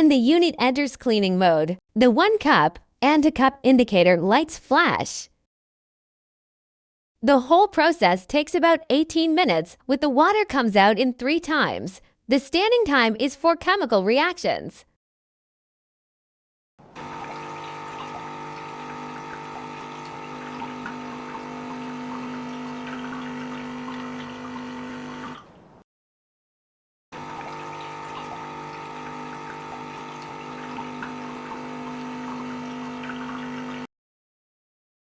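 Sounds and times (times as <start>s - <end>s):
espresso machine pump humming: 16.8s - 25.8s, 27.2s - 33.9s
water splashing: 17.0s - 25.7s, 27.2s - 33.9s.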